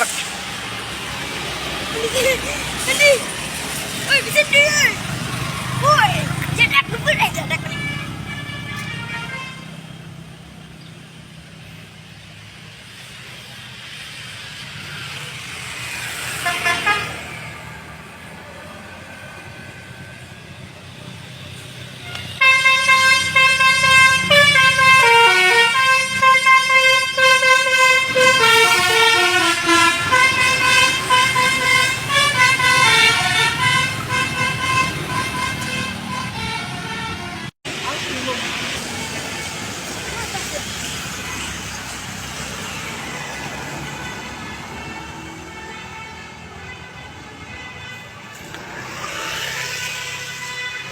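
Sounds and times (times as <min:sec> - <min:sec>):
passing vehicle road noise: 0:00.0 - 0:50.9
multi-tone bus horn melody: 0:05.8 - 0:09.8, 0:16.3 - 0:17.6, 0:21.9 - 0:37.6, 0:42.6 - 0:50.9.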